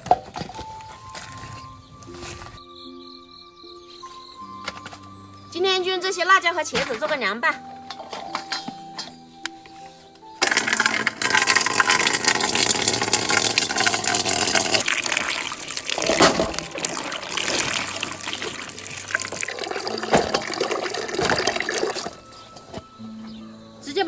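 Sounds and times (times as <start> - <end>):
water running from a tap: 10.4 - 22.2.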